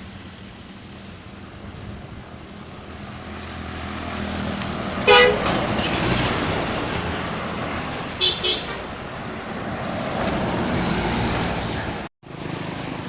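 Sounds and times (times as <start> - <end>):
bus passing: 0.0 - 13.0
bus horn toot: 5.0 - 5.6, 8.2 - 8.8.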